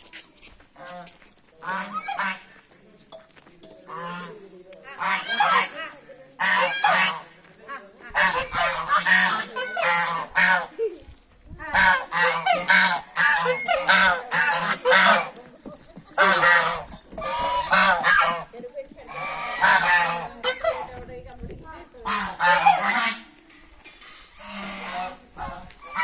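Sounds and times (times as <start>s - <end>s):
honking bird calls: 16.2s - 18.5s.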